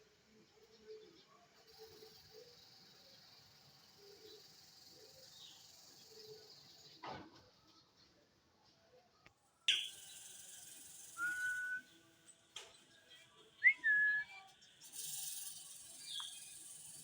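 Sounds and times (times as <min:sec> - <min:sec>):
parrot whistling: 0:11.2 - 0:11.8.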